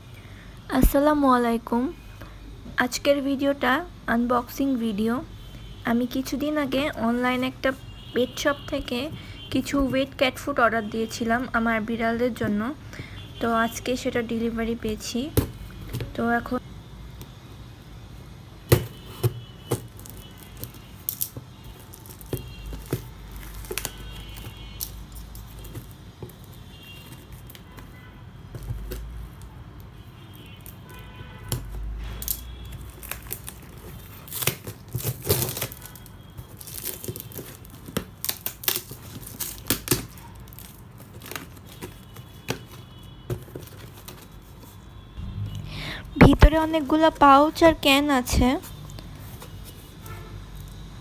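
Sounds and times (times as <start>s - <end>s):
packaging tearing and crinkling: 32.2s - 42.6s
music: 45.2s - 46.2s.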